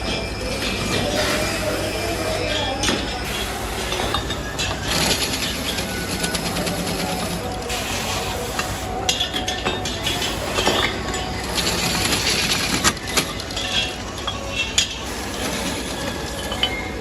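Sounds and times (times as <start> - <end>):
metal pieces clinking: 9.1 - 17.0.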